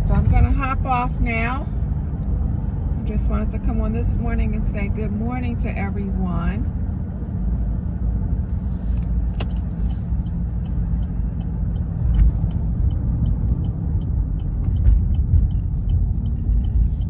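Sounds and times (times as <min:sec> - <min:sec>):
car road noise rumble: 0:00.0 - 0:17.0
light regular ticking: 0:09.1 - 0:17.0.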